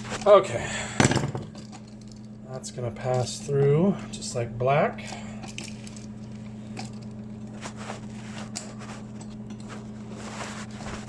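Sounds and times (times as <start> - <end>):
low electrical hum: 0.0 - 11.0
wire clicks and rustles: 5.1 - 11.0.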